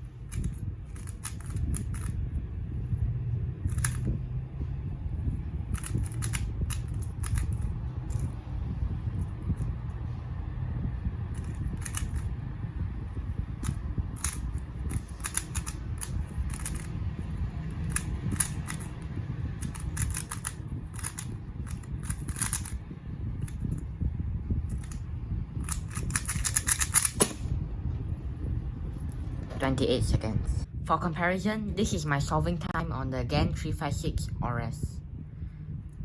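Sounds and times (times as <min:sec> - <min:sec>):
low hum: 0:00.0 - 0:36.0
puzzle cube plastic clicks: 0:00.3 - 0:02.2, 0:03.7 - 0:04.1, 0:05.7 - 0:08.3, 0:11.4 - 0:12.3, 0:13.6 - 0:16.9, 0:17.7 - 0:19.0, 0:19.6 - 0:22.8, 0:24.7 - 0:25.0, 0:25.6 - 0:27.4.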